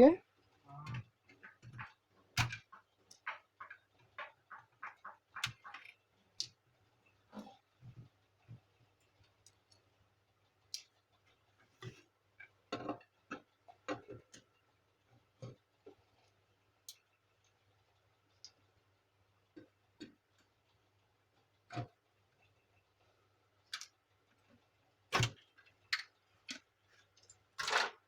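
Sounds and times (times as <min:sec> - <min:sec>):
printer parts clicking and knocking: 0:00.9 - 0:05.9.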